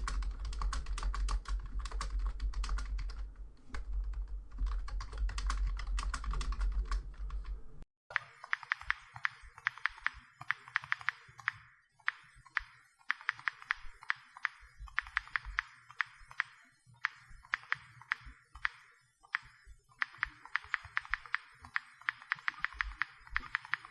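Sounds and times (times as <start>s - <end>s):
keyboard key clicks: 8.1s - 23.9s.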